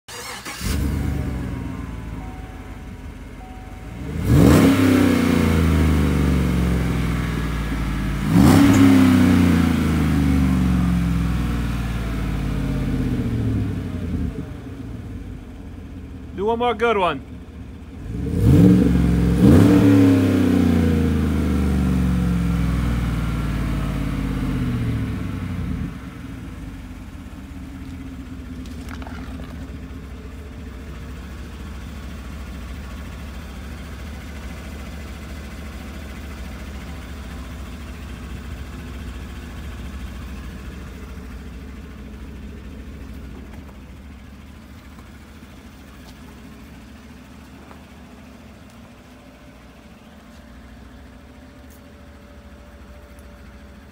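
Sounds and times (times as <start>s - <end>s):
engine low rumble: 0.1s - 53.9s
truck engine revving: 4.0s - 7.4s, 8.1s - 11.3s, 18.0s - 22.2s.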